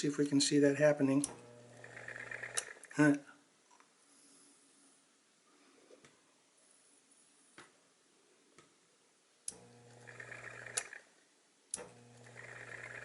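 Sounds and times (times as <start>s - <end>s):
typewriter motor humming: 1.2s - 2.9s, 9.6s - 11.0s, 11.8s - 13.0s.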